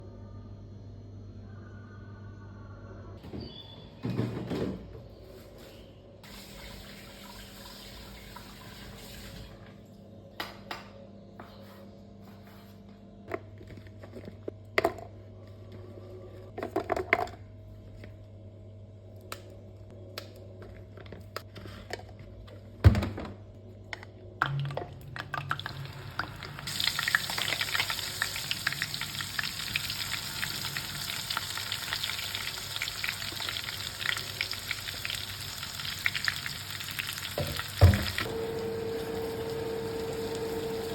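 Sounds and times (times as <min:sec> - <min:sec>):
low steady hum: 0:09.4 - 0:40.9
food sizzling in hot oil: 0:25.6 - 0:40.9.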